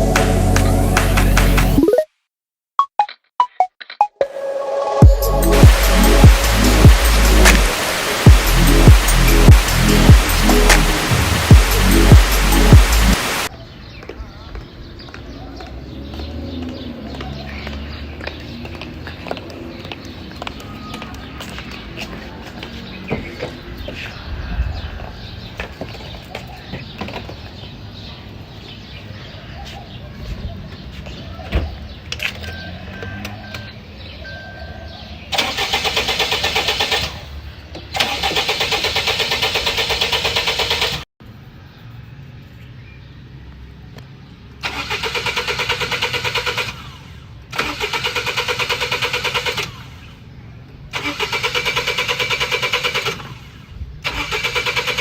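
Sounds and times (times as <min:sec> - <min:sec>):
car engine cranking without starting: 0:35.4 - 0:37.4, 0:38.0 - 0:41.0, 0:44.6 - 0:50.1, 0:50.9 - 0:55.0.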